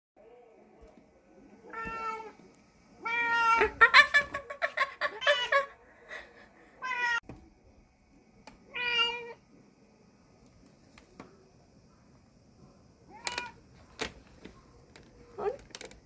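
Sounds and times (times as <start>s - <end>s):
cat meowing: 1.6s - 2.4s, 3.0s - 3.8s, 6.8s - 7.2s, 8.7s - 9.4s.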